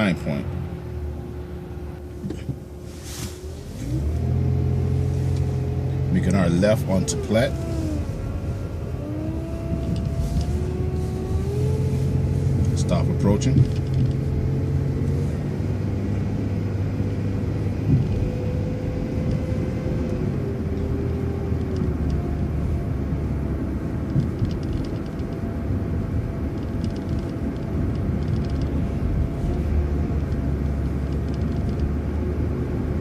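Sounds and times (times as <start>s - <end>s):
bus engine and road rumble: 0.0s - 33.0s
drivetrain whine: 0.0s - 33.0s
faint rattling ticks: 24.1s - 25.4s, 26.6s - 28.8s.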